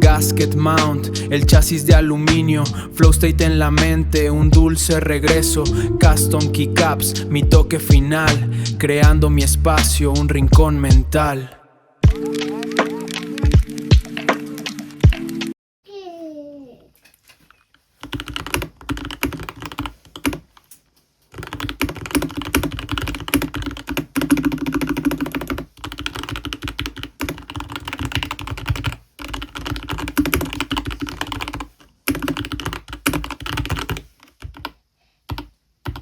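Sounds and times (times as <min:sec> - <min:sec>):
fast typing on keyboard: 0:18.0 - 0:20.7, 0:21.3 - 0:36.0.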